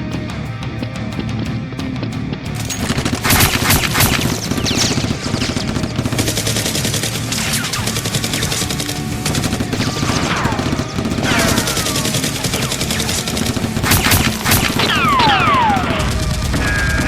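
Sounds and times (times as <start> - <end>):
rapid automatic gunfire: 2.6 - 17.0.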